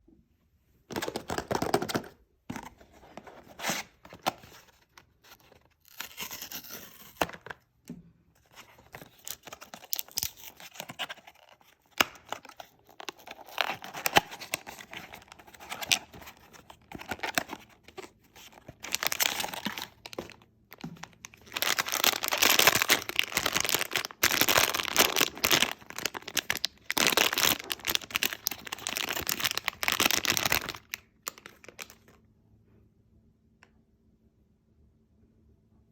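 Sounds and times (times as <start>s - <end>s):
packaging tearing and crinkling: 5.6s - 7.4s, 8.9s - 32.0s.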